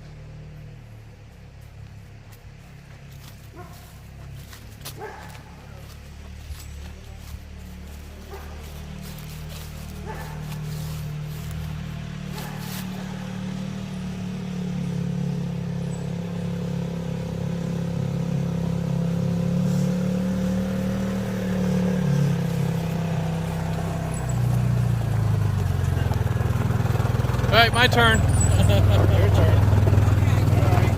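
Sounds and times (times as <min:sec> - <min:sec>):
atv engine running: 0:00.0 - 0:30.9.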